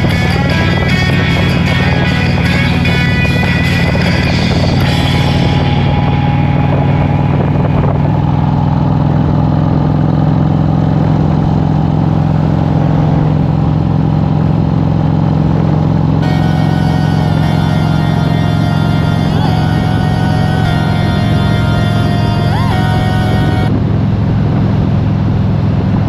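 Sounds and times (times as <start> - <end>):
stereo music: 0.0 - 7.9, 16.2 - 23.7
motorcycle engine running: 0.0 - 26.0.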